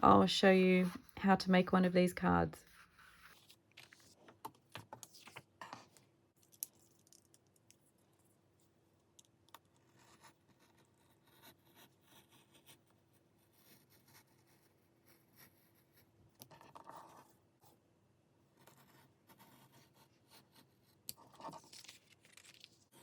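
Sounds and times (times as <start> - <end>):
paper cutting and handling: 21.2 - 23.0.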